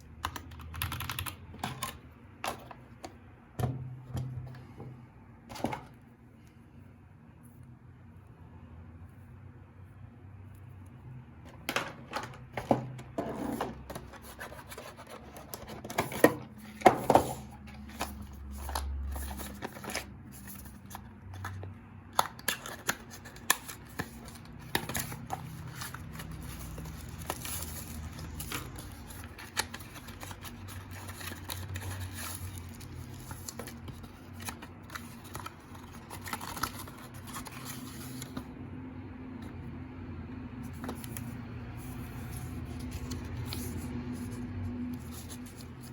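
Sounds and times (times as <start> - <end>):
packaging rustling: 11.9 - 21.6, 22.2 - 38.4.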